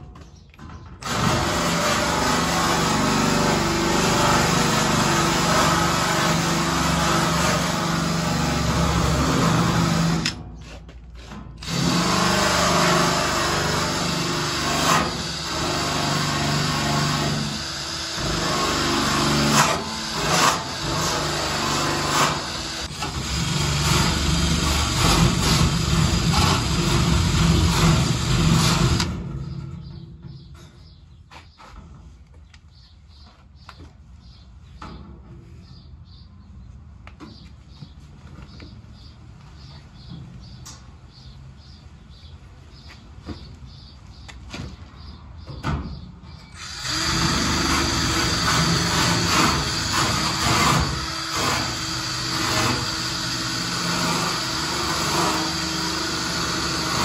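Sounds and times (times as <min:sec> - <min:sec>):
power tool on metal: 0:01.0 - 0:10.4, 0:11.6 - 0:29.7, 0:46.6 - 0:57.0.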